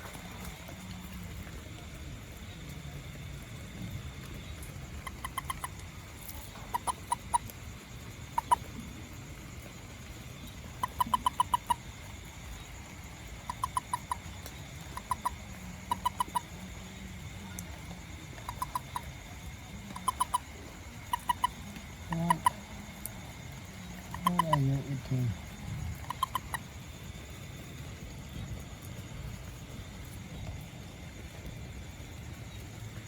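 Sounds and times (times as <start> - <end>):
animal chirping: 4.4 - 8.8, 10.6 - 16.6, 17.4 - 26.8.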